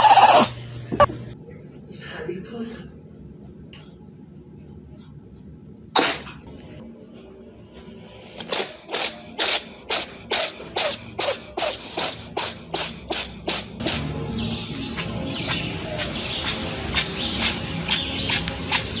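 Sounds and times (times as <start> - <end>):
pet sneezing: 8.4 - 14.1.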